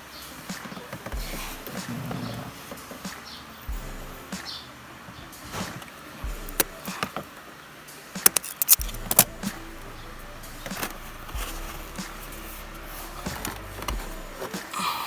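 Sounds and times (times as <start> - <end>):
clicks of hands working wiring: 8.2 - 9.6.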